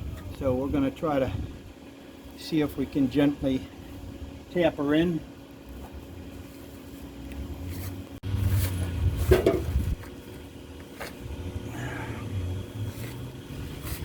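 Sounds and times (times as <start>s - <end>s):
handling noises: 5.3s - 11.3s
low rumble: 8.2s - 10.1s.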